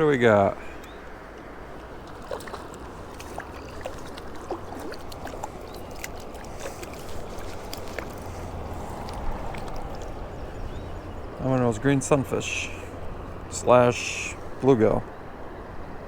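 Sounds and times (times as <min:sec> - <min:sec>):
creek water trickling: 0:00.0 - 0:16.0
small splashes and clicks: 0:00.8 - 0:10.4.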